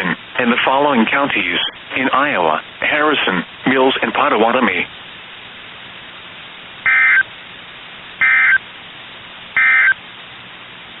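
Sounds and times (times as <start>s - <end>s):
radio hiss: 0.0s - 11.0s
warbling two-tone data bursts: 6.9s - 7.3s, 8.2s - 8.6s, 9.6s - 10.0s.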